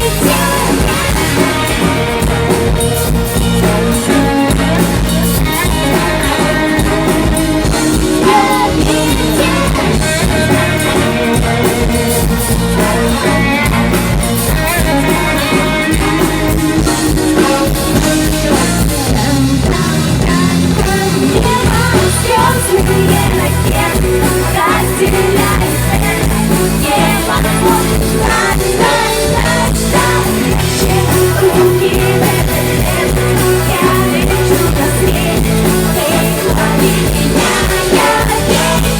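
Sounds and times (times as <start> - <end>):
live band playing pop-rock: 0.0 - 38.9
woman singing: 0.0 - 38.9.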